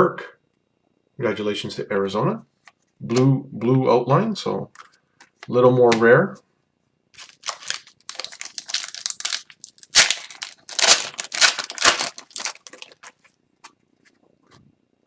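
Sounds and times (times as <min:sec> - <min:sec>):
plastic wrapper crinkling and tearing: 0:07.2 - 0:13.2.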